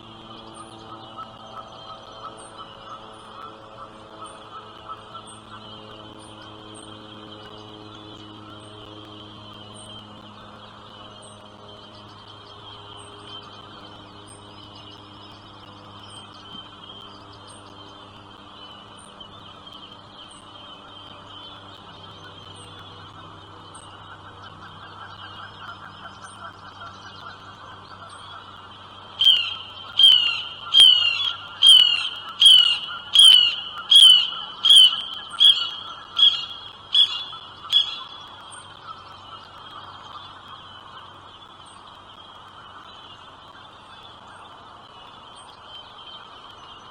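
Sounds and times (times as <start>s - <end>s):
high-pitched bird chatter: 29.1s - 39.2s
loud bird calls falling in pitch: 29.2s - 39.0s.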